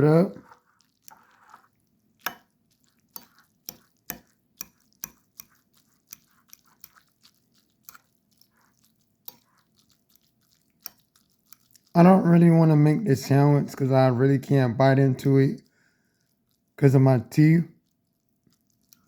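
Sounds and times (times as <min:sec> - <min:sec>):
utensil scraping and tapping bowl: 0:00.3 - 0:11.9.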